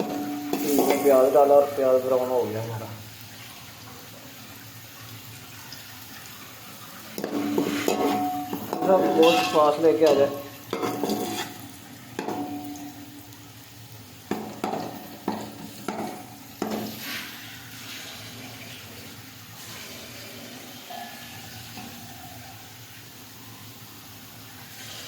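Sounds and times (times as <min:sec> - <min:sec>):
onions sizzling in oil: 0:00.0 - 0:25.0
metal spoon knocking on pot: 0:07.2 - 0:11.4, 0:14.3 - 0:16.9.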